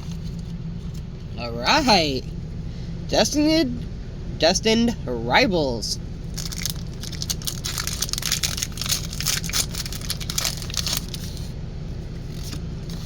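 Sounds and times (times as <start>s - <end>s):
steady low hum: 0.0s - 13.0s
foil wrapper tearing and crinkling: 6.3s - 11.5s, 12.2s - 13.0s.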